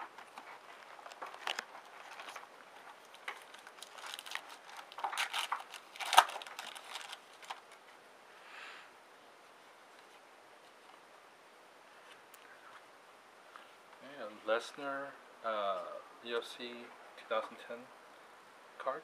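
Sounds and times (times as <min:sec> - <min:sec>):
cards and wrapper rustling: 0:00.0 - 0:07.8.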